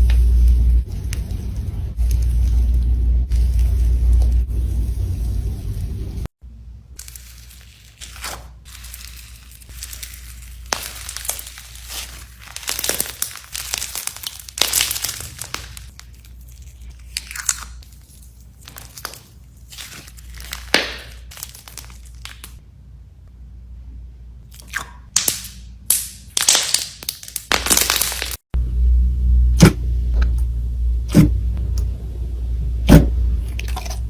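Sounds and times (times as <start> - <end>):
slime crackling and popping: 7.0 - 17.9, 18.6 - 22.6, 25.2 - 28.4.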